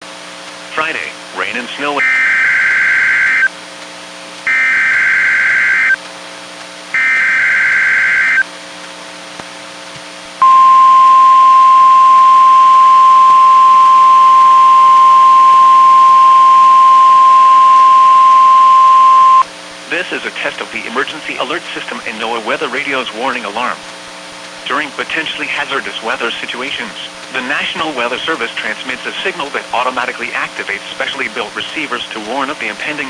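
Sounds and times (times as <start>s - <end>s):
squawking digital data tones: 1.8s - 3.5s, 4.5s - 6.0s, 7.0s - 8.4s, 10.4s - 19.4s
steady warning alarm tone: 1.8s - 3.5s, 4.5s - 6.0s, 7.0s - 8.4s, 10.4s - 19.4s.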